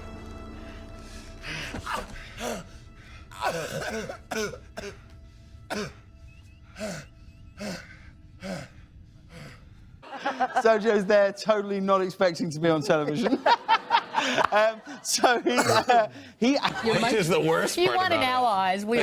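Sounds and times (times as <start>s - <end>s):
faint music: 0.0s - 13.3s
man coughing: 1.5s - 9.6s, 15.2s - 16.2s.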